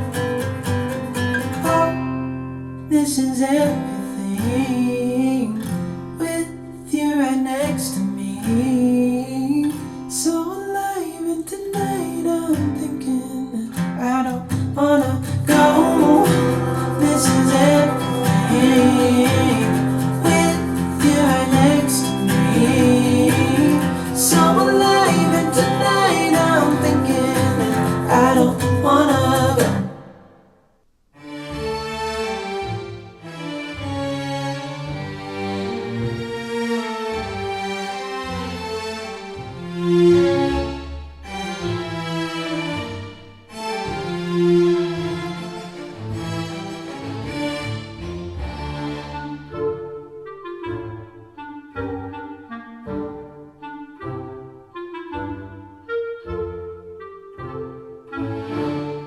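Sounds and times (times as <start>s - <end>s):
acoustic guitar song with singing: 0.0s - 30.4s.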